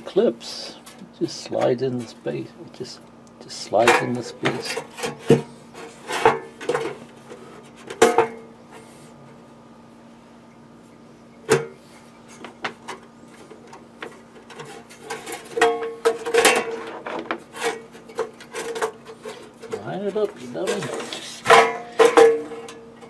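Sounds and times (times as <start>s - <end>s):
metallic knocks and scrapes: 14.0s - 22.9s
sharp metal clanks: 20.6s - 23.0s.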